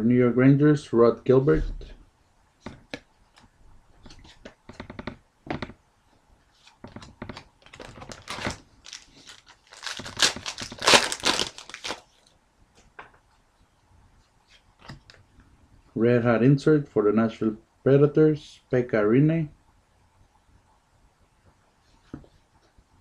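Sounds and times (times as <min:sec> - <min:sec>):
wrapper crinkling and tearing: 0:07.3 - 0:12.3.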